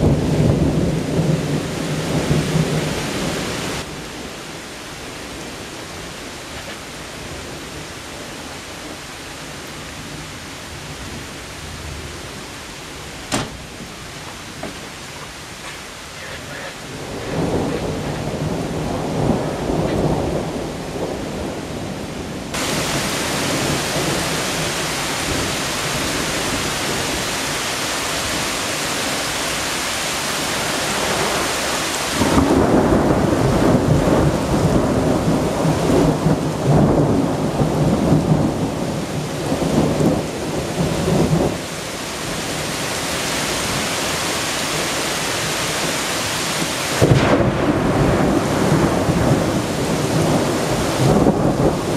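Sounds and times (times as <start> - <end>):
rolling thunder: 0.0 - 4.4, 16.9 - 27.2, 30.6 - 42.7, 46.5 - 51.9
heavy rain hissing: 0.0 - 51.9.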